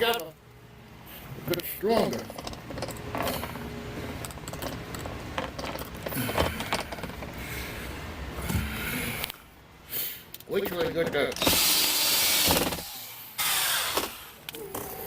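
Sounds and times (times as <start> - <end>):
plastic parts clicking and rattling: 1.5 - 3.6, 4.2 - 7.4.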